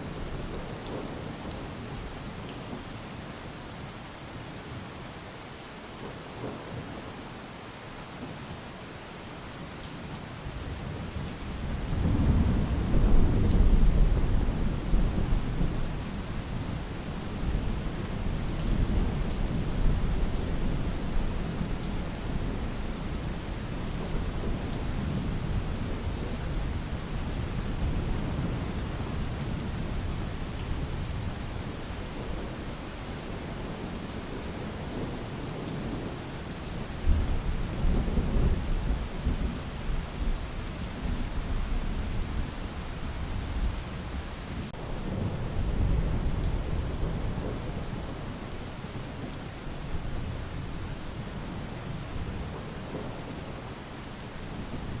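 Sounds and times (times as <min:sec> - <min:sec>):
steady rain falling: 0:00.0 - 0:55.0
low rumble of thunder: 0:10.6 - 0:53.4.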